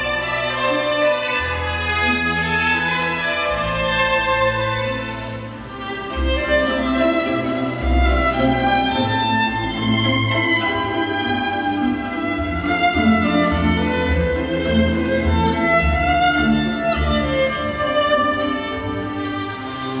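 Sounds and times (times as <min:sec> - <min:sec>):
violin melody: 0:00.0 - 0:20.0.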